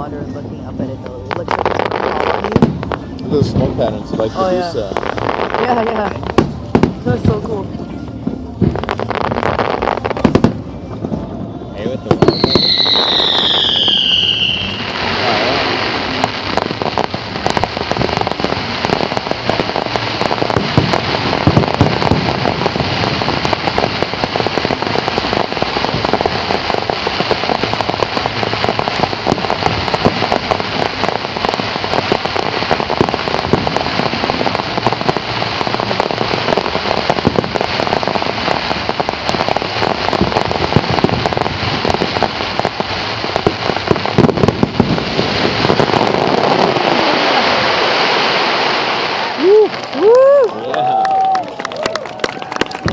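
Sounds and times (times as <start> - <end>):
fireworks crackling: 0.0 - 52.9
falling firework whistle: 12.1 - 16.6, 45.8 - 52.9.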